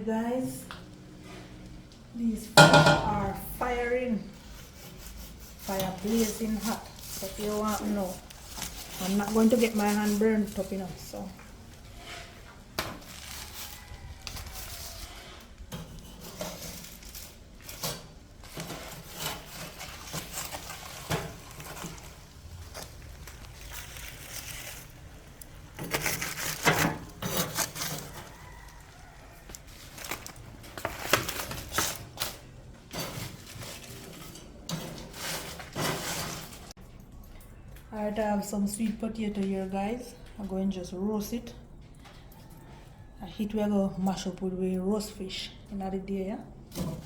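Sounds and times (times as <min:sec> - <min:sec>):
metal cookware clattering: 0:02.6 - 0:03.6.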